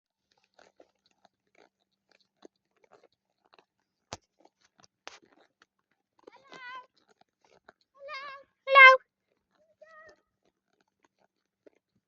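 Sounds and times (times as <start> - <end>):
faint chewing crunches: 0.1 - 8.0, 9.1 - 12.0.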